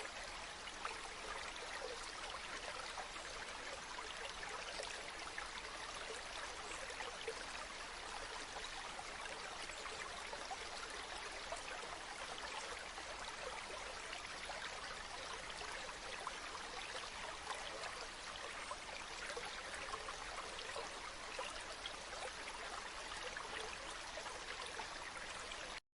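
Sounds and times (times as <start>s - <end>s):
stream flowing over rocks: 0.0s - 25.8s.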